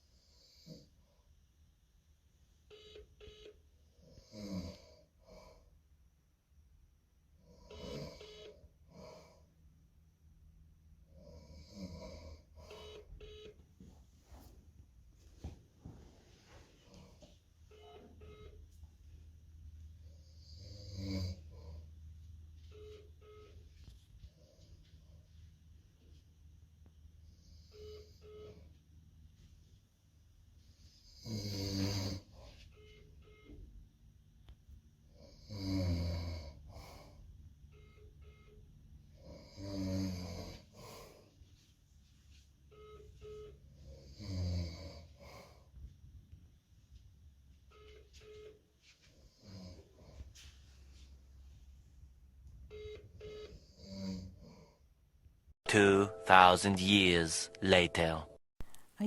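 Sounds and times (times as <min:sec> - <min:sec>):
man snoring: 0:00.1 - 0:00.9, 0:04.0 - 0:05.7, 0:07.4 - 0:09.4, 0:11.1 - 0:12.8, 0:20.2 - 0:21.8, 0:31.0 - 0:32.4, 0:35.1 - 0:37.2, 0:39.2 - 0:41.2, 0:43.8 - 0:45.6, 0:49.3 - 0:50.0, 0:53.6 - 0:54.7.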